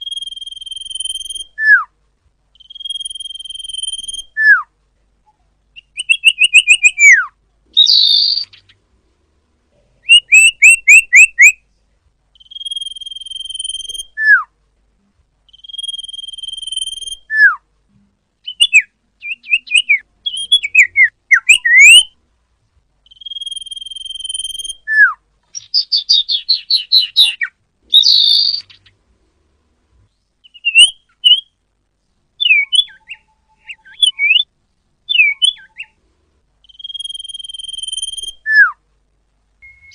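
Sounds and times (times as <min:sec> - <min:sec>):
bird song with whistles and trills: 0:00.0 - 0:04.7, 0:05.8 - 0:08.8, 0:10.0 - 0:11.6, 0:12.3 - 0:14.5, 0:15.5 - 0:17.6, 0:18.4 - 0:22.2, 0:23.0 - 0:28.9, 0:30.4 - 0:31.6, 0:32.4 - 0:34.5, 0:35.1 - 0:36.0, 0:36.6 - 0:38.8, 0:39.6 - 0:39.9.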